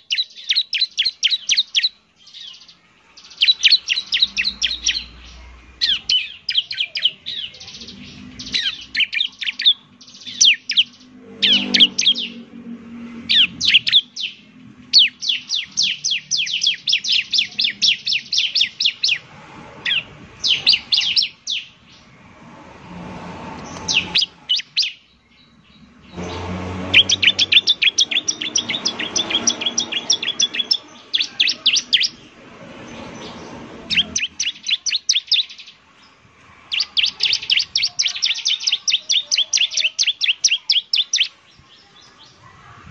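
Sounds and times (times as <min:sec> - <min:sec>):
bird trilling high chirps: 0:00.0 - 0:12.6, 0:13.2 - 0:22.1, 0:23.6 - 0:32.3, 0:32.9 - 0:35.8, 0:36.6 - 0:42.4.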